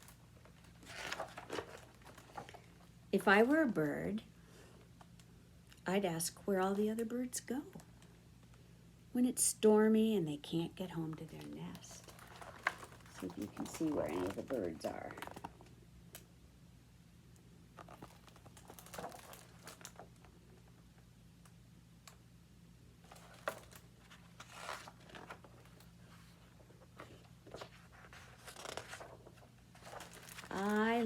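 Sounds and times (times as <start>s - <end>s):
paper book rustling: 0.0s - 2.9s, 11.2s - 15.7s, 17.8s - 20.2s, 23.0s - 31.0s
low electrical hum: 0.0s - 31.0s.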